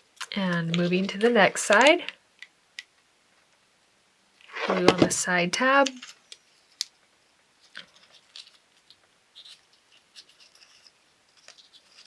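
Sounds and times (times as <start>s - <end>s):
cardstock rustling and scratching: 4.6s - 5.4s, 9.4s - 12.0s.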